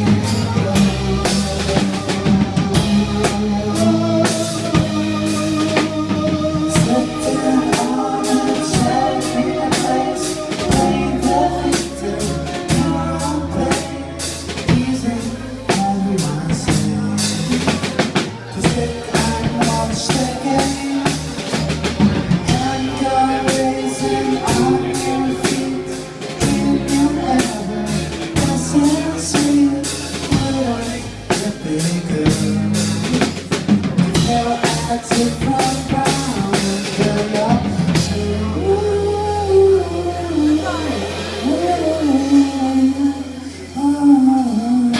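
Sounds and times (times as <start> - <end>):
band playing instrumental: 0.0 - 44.9
drum kit beat: 0.0 - 44.9.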